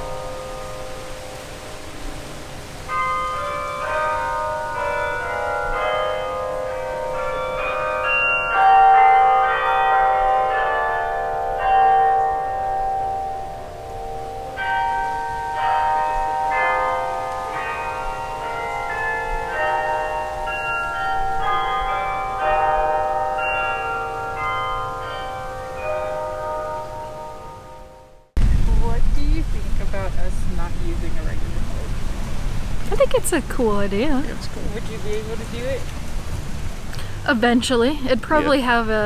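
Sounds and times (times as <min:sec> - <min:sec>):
carillon bells playing melody: 0:02.8 - 0:28.2.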